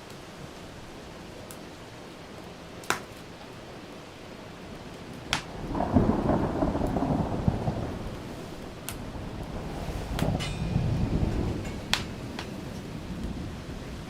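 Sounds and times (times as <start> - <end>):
steady rain: 0.0 - 14.0
wood fire popping: 2.8 - 3.5, 4.9 - 5.9, 8.1 - 13.4
thunder rumbling: 5.2 - 14.0.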